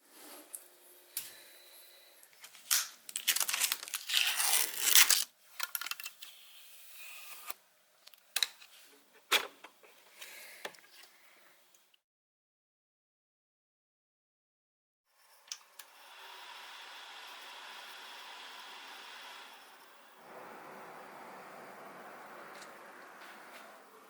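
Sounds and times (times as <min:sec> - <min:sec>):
packaging being torn and crinkled: 0:02.5 - 0:06.2.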